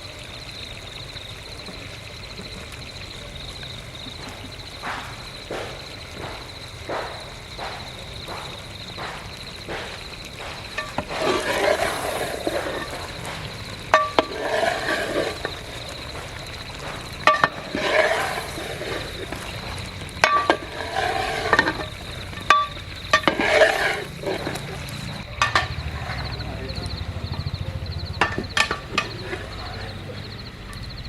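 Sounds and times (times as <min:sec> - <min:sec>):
metal spoon scraping a pan: 0:04.3 - 0:26.4, 0:28.2 - 0:30.0
spoon clinking on pan: 0:13.9 - 0:14.4, 0:25.4 - 0:25.8.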